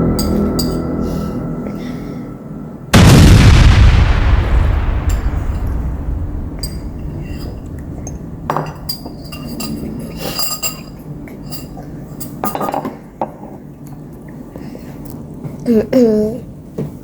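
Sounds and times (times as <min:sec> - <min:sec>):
utensils clinking against dishes: 0:00.2 - 0:00.9, 0:08.5 - 0:14.0.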